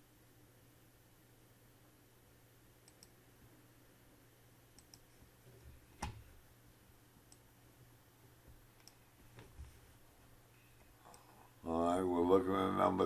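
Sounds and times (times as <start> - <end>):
low steady hum: 0.0 - 13.0
computer mouse clicks: 2.8 - 3.2, 4.8 - 5.2, 8.8 - 9.5.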